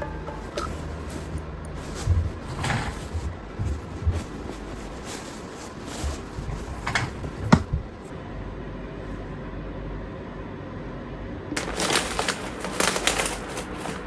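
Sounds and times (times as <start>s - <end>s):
dull handling knocks: 0.0s - 8.1s.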